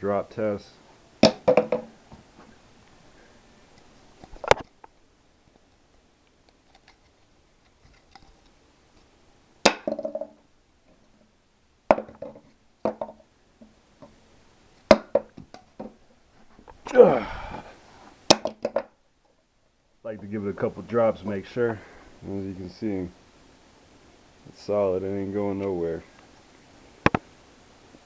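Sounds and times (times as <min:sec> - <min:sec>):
plastic part hitting hard floor: 0:01.2 - 0:01.9, 0:09.7 - 0:10.4.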